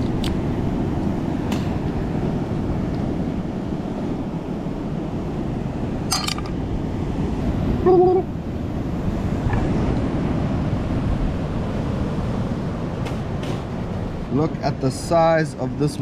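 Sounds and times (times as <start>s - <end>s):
wind on microphone: 0.0s - 16.0s
mussel shells clinking: 6.1s - 6.6s.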